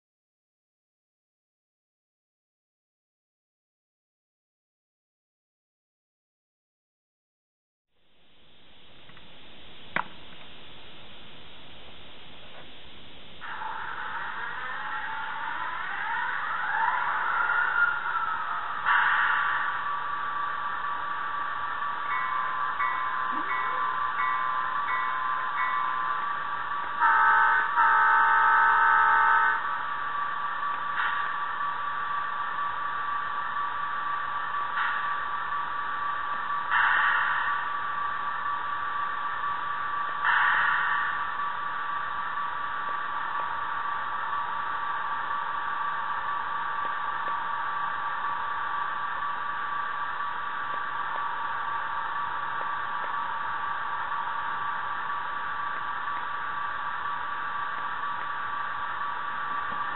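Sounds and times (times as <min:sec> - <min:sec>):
model locomotive horn blast: 0:27.0 - 0:29.8.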